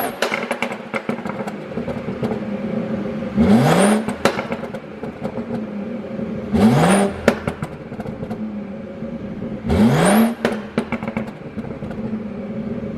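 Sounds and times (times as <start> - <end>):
exhaust pops and crackles: 0.0 - 3.0, 3.7 - 5.8, 7.0 - 8.5, 10.0 - 12.2
car engine idling and revving: 0.0 - 12.9.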